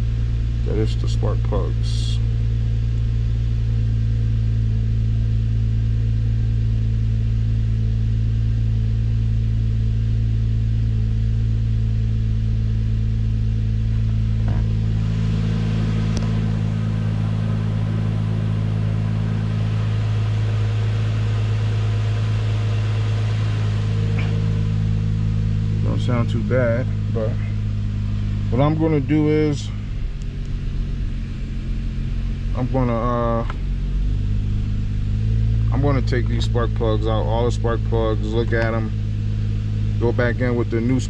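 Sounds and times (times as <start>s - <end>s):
car engine idling: 0.0s - 41.0s.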